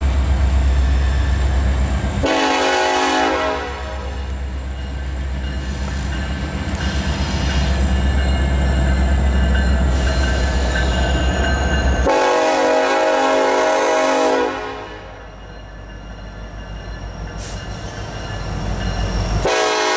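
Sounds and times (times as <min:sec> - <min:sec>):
diesel locomotive engine rumbling: 0:00.0 - 0:19.9
train horn blast: 0:02.2 - 0:04.3, 0:12.0 - 0:15.3, 0:19.4 - 0:19.9.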